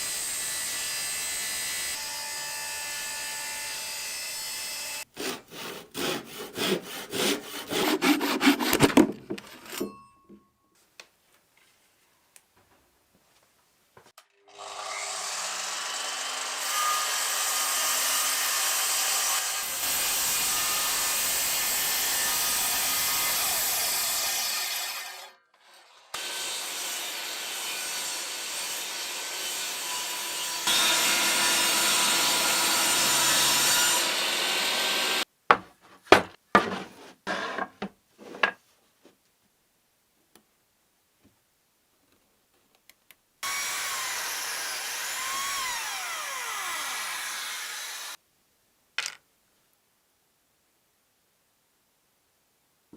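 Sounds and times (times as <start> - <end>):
power tool working on wood: 43.4 - 48.2.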